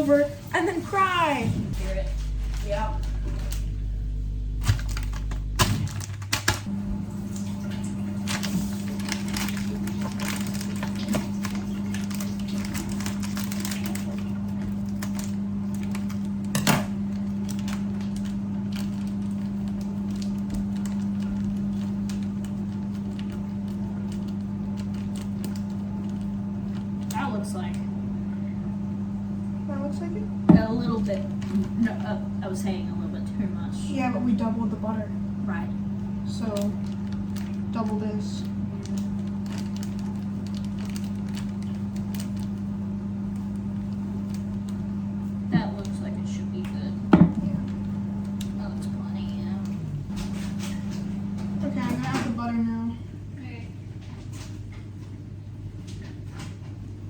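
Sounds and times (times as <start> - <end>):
low electrical hum: 0.0 - 57.0.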